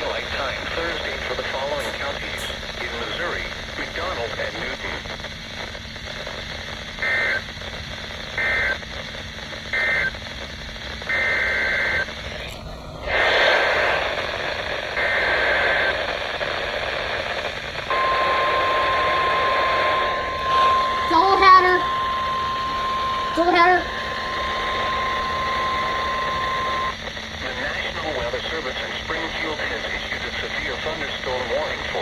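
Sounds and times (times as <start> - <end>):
radio hiss: 0.0 - 32.0
single-pitch warning alarm tone: 17.9 - 27.0.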